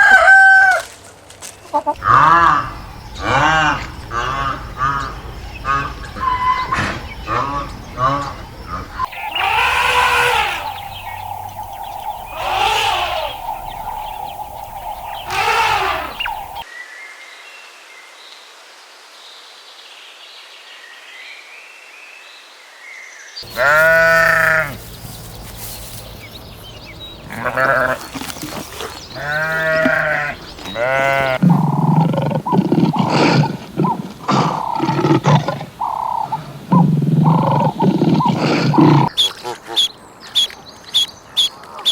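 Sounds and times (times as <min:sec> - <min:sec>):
livestock bleating: 0:09.0 - 0:16.6, 0:23.4 - 0:25.1, 0:27.2 - 0:28.5, 0:29.2 - 0:31.7.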